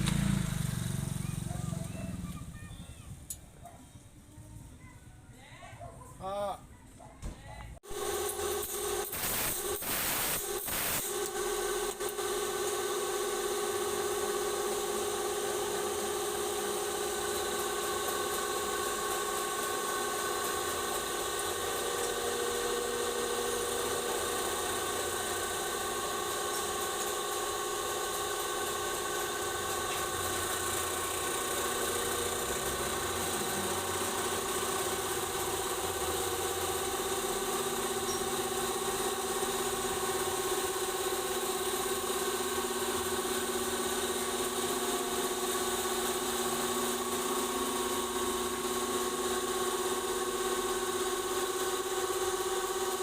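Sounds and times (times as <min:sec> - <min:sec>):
diesel engine idling: 0:00.0 - 0:02.7.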